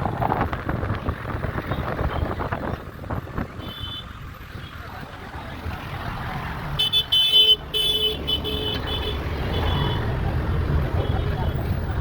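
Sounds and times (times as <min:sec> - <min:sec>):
road traffic rumbling: 0:00.0 - 0:12.0
vehicle horn honking: 0:03.6 - 0:04.1, 0:06.8 - 0:10.1.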